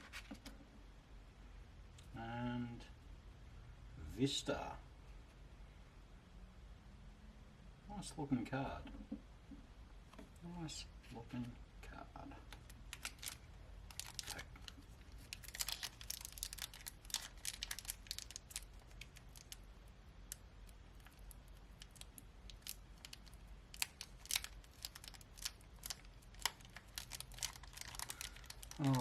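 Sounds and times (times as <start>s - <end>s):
foil pack crinkling and tearing: 12.5s - 19.7s, 20.3s - 29.0s.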